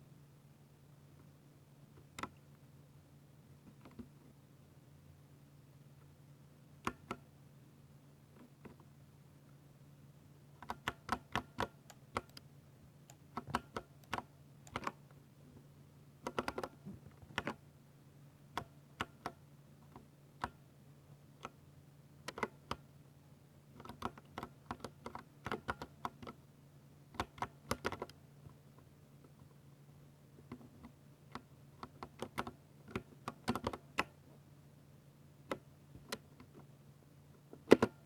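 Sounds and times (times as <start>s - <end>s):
mechanical keyboard typing: 10.6s - 12.4s, 13.3s - 15.0s, 16.2s - 17.6s, 23.8s - 26.4s, 27.2s - 28.1s, 31.4s - 34.1s.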